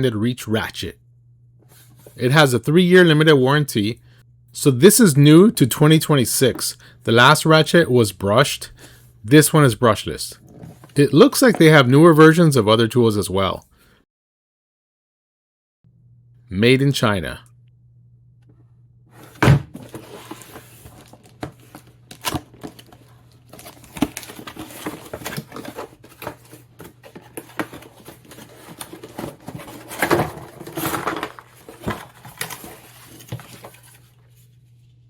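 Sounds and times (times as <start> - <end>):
packaging rustling and crinkling: 19.2 - 34.6.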